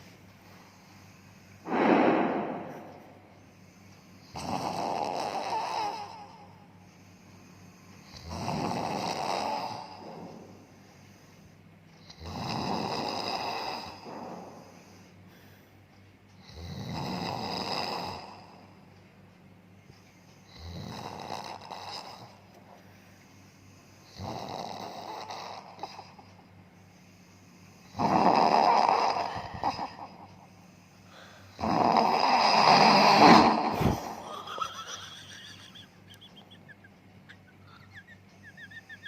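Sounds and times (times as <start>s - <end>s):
quiet breathing: 0.0s - 4.4s, 5.9s - 8.3s, 9.7s - 12.0s, 13.9s - 16.4s, 21.8s - 24.2s, 25.6s - 28.0s, 29.2s - 31.6s
man snoring: 4.2s - 6.6s, 7.8s - 10.6s, 12.0s - 14.8s, 16.4s - 18.6s, 20.5s - 22.4s, 24.0s - 26.2s, 27.6s - 34.9s.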